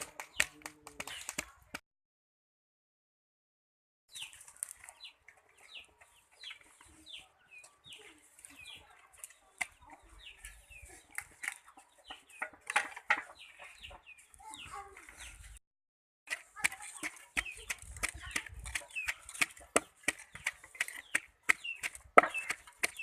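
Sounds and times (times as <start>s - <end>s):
chickens peeping and clucking: 4.1s - 15.6s, 16.3s - 23.0s.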